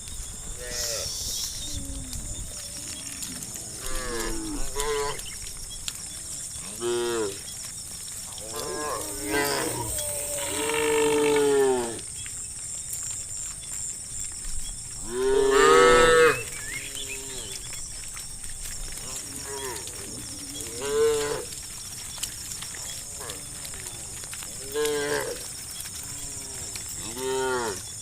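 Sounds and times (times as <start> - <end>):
cattle mooing: 2.0 - 5.3, 8.4 - 12.0, 15.1 - 17.6, 24.5 - 27.8.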